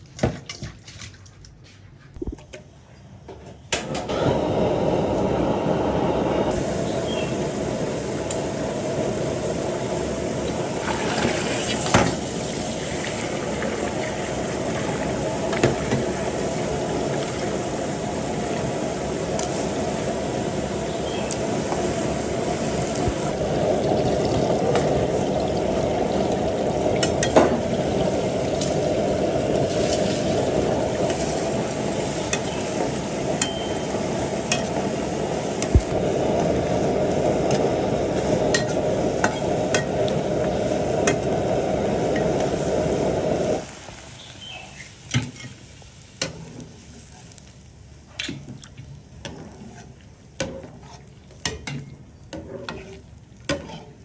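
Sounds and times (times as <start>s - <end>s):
utensils tapping cookware: 33.4s - 33.8s.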